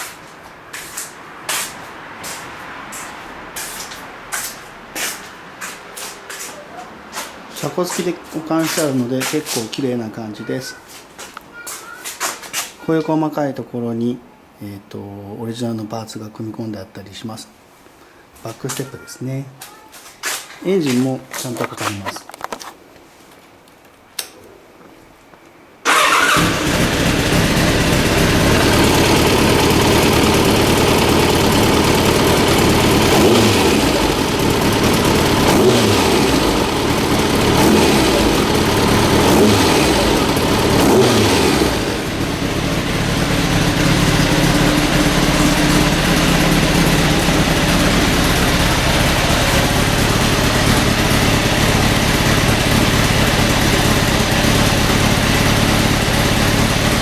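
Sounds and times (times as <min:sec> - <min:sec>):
motorcycle engine starting and revving: 0:25.8 - 0:57.0.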